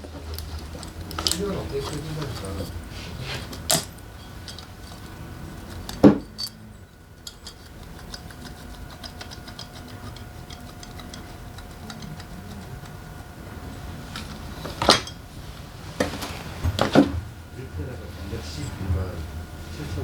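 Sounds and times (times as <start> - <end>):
metal tools ticking: 3.5 - 14.3.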